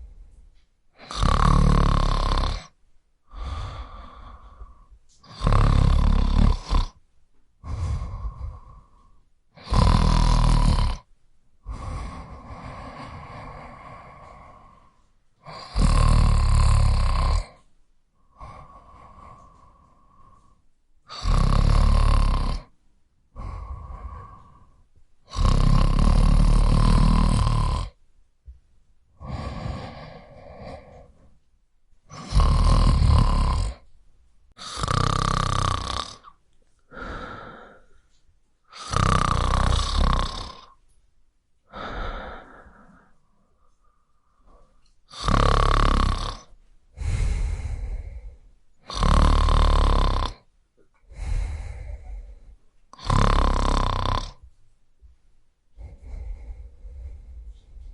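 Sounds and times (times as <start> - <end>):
quiet breaths: 0.0 - 57.9
loud snoring: 1.0 - 7.0, 7.6 - 17.6, 18.3 - 20.5, 21.1 - 22.7, 23.4 - 28.0, 29.2 - 31.3, 32.1 - 33.8, 34.6 - 37.8, 38.7 - 40.8, 44.4 - 50.5, 53.0 - 54.4, 55.8 - 57.9.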